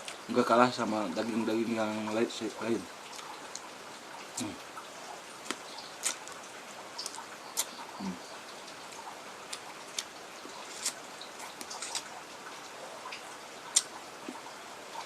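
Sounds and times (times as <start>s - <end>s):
wet chewing and lip smacks: 3.1s - 4.5s, 5.1s - 8.0s, 8.7s - 12.3s, 13.0s - 14.5s.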